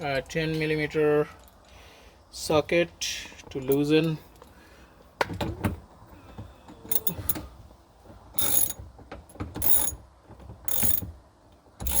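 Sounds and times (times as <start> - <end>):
socket ratchet clicking: 6.9 - 7.4, 8.4 - 8.8, 9.6 - 10.0, 10.7 - 11.1.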